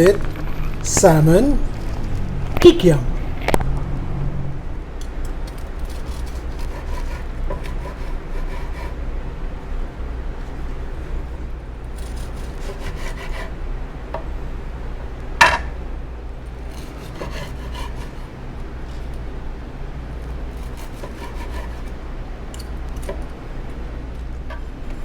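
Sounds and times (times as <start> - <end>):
knife sawing through food: 5.8 - 9.0, 12.0 - 13.6, 16.6 - 19.0, 20.2 - 22.0.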